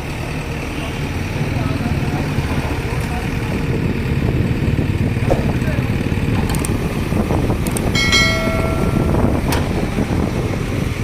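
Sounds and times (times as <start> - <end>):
diesel engine low rumble: 0.0 - 11.0
metallic clang: 8.0 - 9.8.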